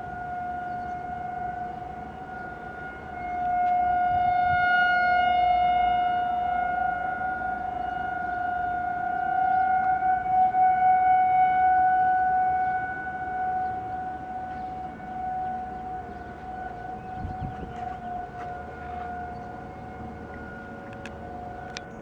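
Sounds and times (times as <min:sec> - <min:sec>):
lower-pitched siren: 0:00.0 - 0:22.0
warning siren steady tone: 0:00.0 - 0:22.0.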